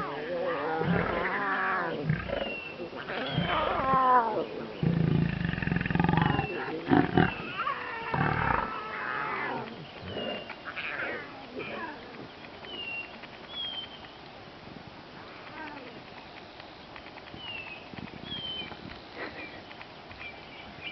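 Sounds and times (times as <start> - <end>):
lions growling and snarling: 0.0 - 12.0.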